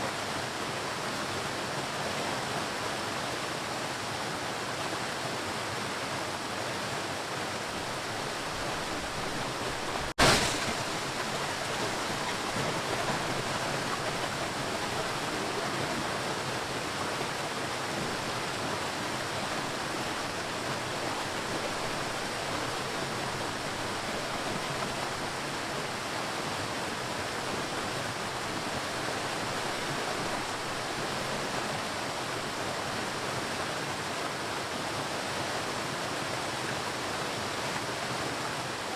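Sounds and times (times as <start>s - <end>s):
ocean surf washing: 7.0s - 33.2s.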